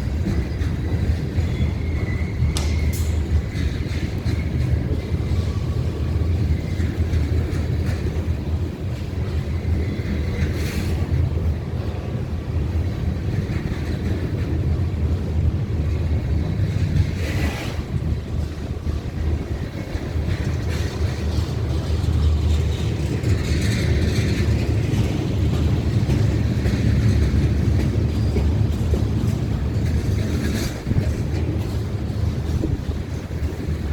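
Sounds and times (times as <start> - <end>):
freight train wheels rumbling: 0.0 - 33.9
sharp metal clanks: 2.6 - 3.3.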